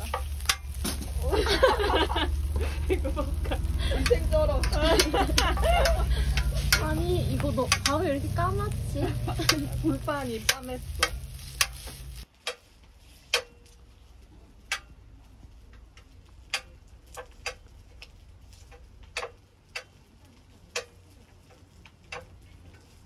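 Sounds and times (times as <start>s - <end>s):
faint low rumble: 0.0s - 12.3s.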